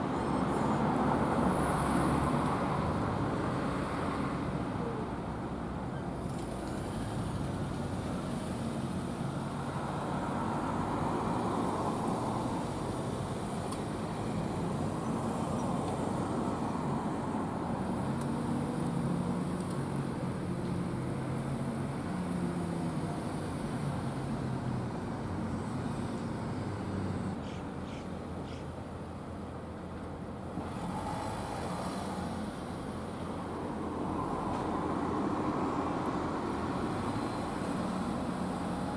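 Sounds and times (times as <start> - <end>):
road traffic rumble: 0.0 - 38.9.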